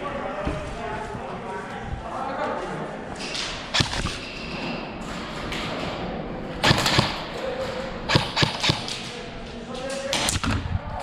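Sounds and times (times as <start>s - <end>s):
steady background noise: 0.0s - 11.0s
sharp cracks and thuds: 3.7s - 4.3s, 6.6s - 7.3s, 8.1s - 9.0s.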